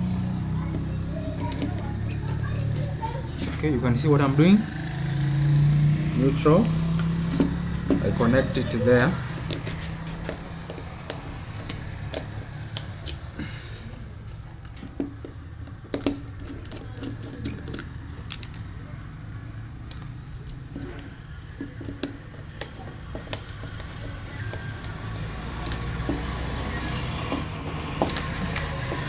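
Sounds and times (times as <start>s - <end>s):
clicks and taps of wiring: 14.2s - 18.8s.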